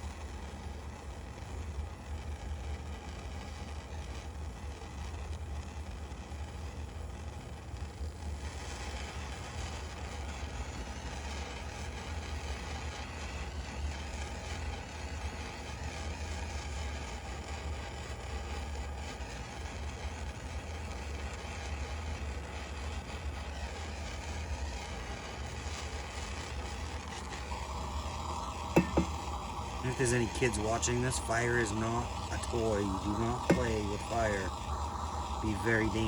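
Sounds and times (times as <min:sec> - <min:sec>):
bowl being sanded: 0:27.2 - 0:36.0
wood lathe humming: 0:27.2 - 0:36.0.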